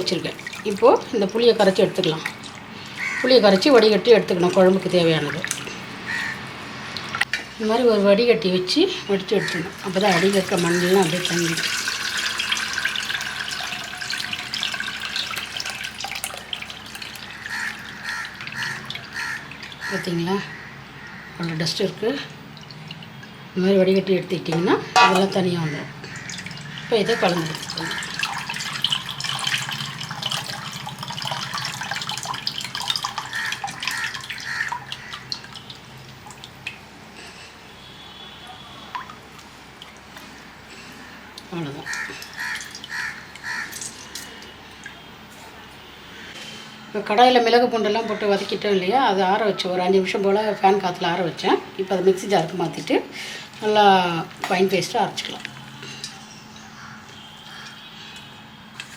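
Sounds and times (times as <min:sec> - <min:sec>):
hands squeezing in water sloshing: 0:00.0 - 0:06.4
liquid trickling through strainer: 0:00.0 - 0:07.3, 0:09.5 - 0:20.0, 0:25.0 - 0:36.9, 0:41.8 - 0:45.1
water drips: 0:00.0 - 0:07.4, 0:09.3 - 0:24.1, 0:25.0 - 0:37.3, 0:38.2 - 0:45.4, 0:50.2 - 0:58.9.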